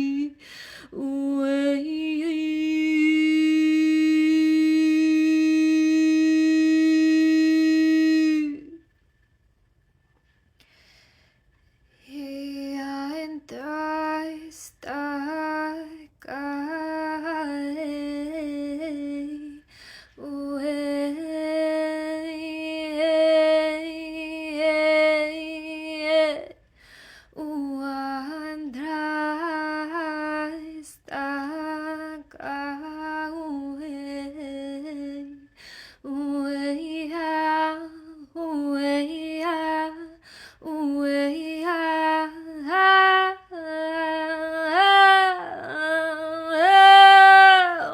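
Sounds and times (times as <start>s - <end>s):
woman chanting wordlessly: 0.0s - 8.8s, 27.4s - 47.9s.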